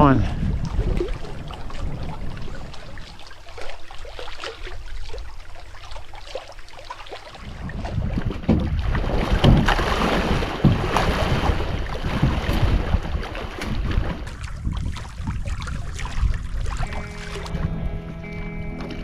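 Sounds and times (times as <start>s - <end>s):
wind buffeting microphone: 0.0s - 5.3s, 7.3s - 19.0s
water splashing and lapping: 0.0s - 19.0s
knocks on canoe: 8.2s - 14.4s.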